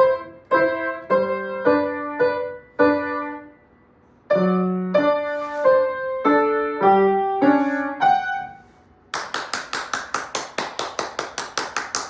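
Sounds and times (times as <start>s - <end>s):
rapid even tapping: 9.2s - 12.0s.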